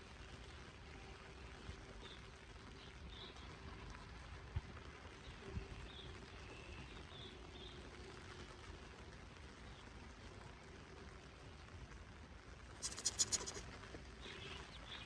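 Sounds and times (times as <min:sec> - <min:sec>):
steady rain falling: 0:00.0 - 0:15.0
bird chirps: 0:12.8 - 0:13.6.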